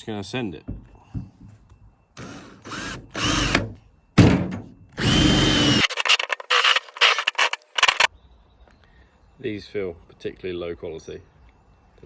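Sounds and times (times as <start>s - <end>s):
power drill drilling metal: 2.2s - 3.7s, 5.0s - 8.1s.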